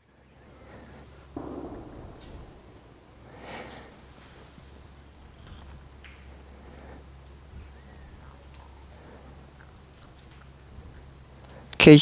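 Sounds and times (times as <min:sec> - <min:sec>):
insects trilling: 0:05.4 - 0:12.0.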